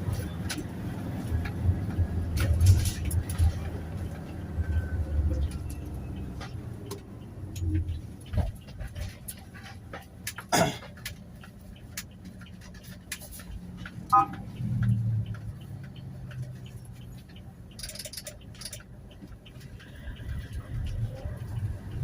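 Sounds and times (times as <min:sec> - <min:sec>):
van engine and road rumble: 0:00.0 - 0:22.0
small clicks and rattles: 0:14.8 - 0:22.0.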